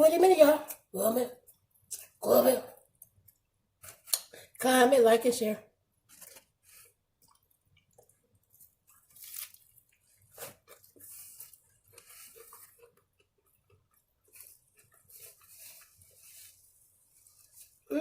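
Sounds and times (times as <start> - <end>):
chewing and crunching: 6.1 - 16.2.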